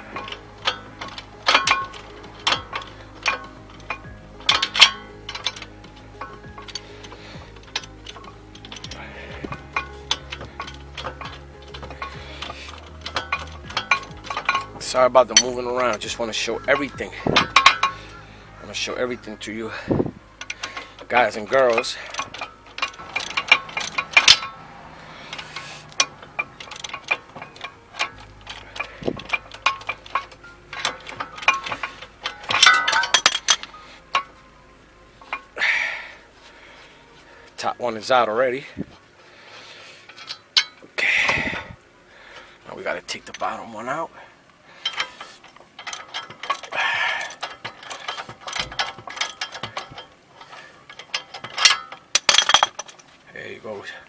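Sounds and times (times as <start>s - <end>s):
hand ratchet clicking: 0.0s - 34.4s, 44.8s - 53.2s
light metal clinks: 0.0s - 37.7s, 38.4s - 54.0s.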